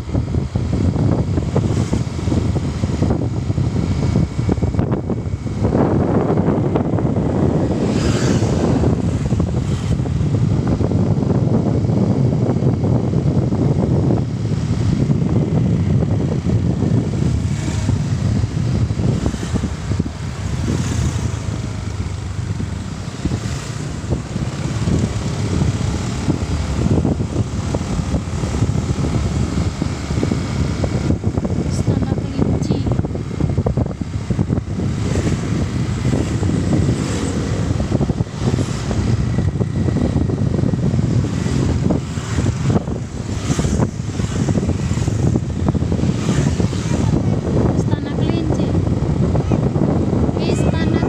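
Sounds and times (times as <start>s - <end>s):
vehicle low rumble: 0.0s - 51.0s.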